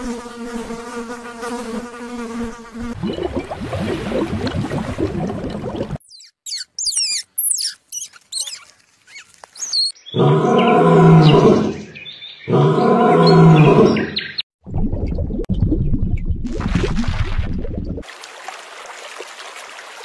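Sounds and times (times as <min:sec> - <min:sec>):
high chirping calls: 0:06.0 - 0:12.6
large animal roaring: 0:10.1 - 0:11.9, 0:12.5 - 0:14.2.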